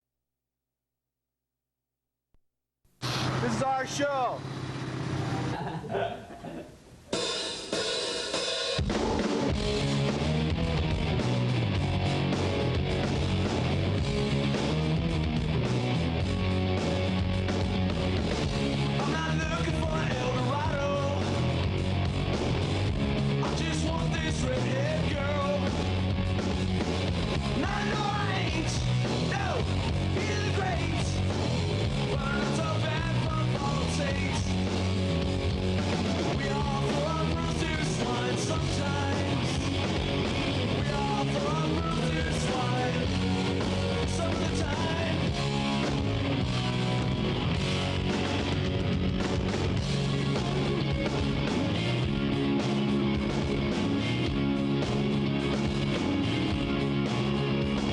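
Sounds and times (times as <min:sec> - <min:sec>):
fast punk rock music: 0:07.2 - 0:57.9
person singing or shouting: 0:27.6 - 0:28.7.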